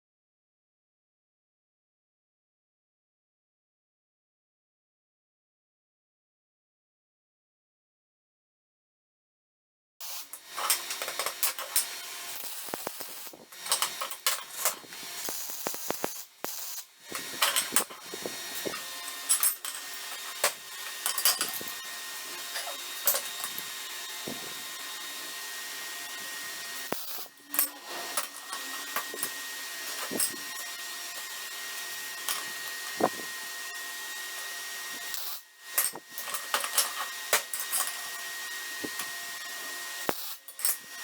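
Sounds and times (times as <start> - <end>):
tool clicks and knocks: 12.7 - 16.1, 17.1 - 24.5.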